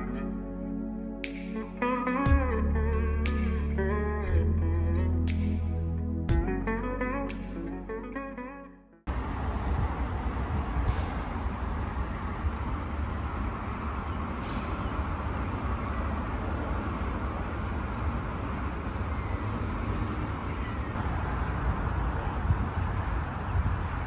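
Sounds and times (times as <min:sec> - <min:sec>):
low rumble: 0:00.0 - 0:08.2.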